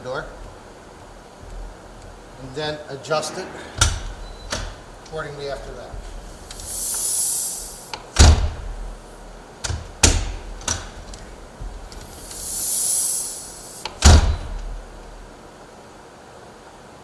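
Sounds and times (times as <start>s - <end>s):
door closer air hiss: 3.0s - 15.4s
door banging shut: 3.1s - 6.8s, 8.0s - 9.0s, 13.8s - 14.9s
latch and handle clicks: 9.6s - 11.3s.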